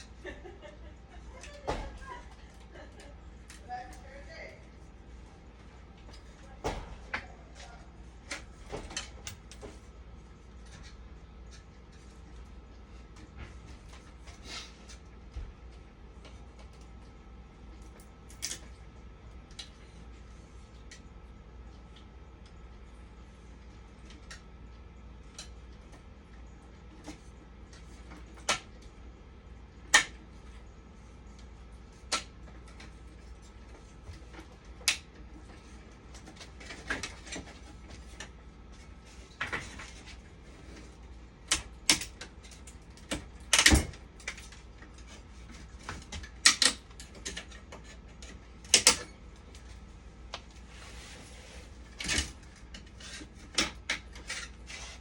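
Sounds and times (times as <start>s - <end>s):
low steady hum: 0.0s - 55.0s
tools clicking and knocking: 41.5s - 49.6s.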